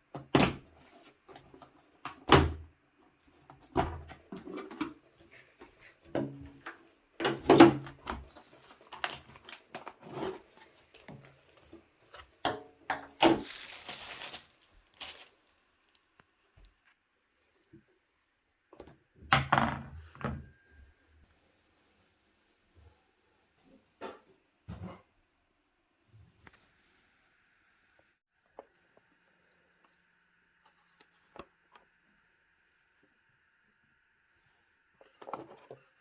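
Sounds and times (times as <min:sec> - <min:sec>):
kitchen items knocking and clunking: 0:06.0 - 0:11.4, 0:18.8 - 0:20.7.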